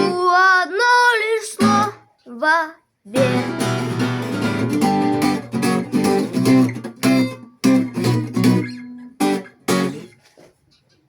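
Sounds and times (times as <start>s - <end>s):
guitar strumming chords: 0.0s - 0.3s, 1.5s - 2.0s, 3.1s - 10.2s.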